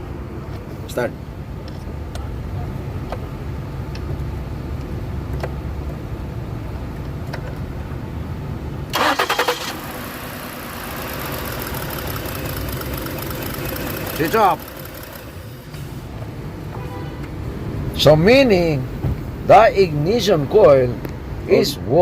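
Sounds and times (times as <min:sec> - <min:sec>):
engine cranking and starting: 0:08.9 - 0:16.0.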